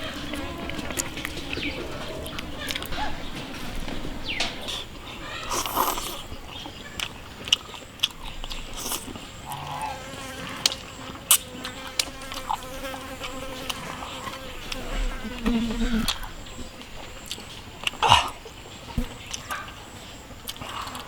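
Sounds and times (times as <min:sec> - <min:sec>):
chewing: 0:00.0 - 0:21.0
faint insect buzz: 0:08.7 - 0:17.2.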